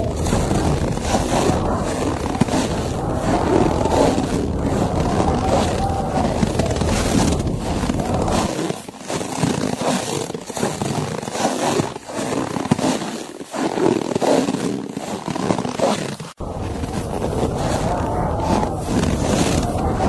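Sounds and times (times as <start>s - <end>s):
low wind rumble: 0.0s - 8.5s, 16.4s - 20.0s.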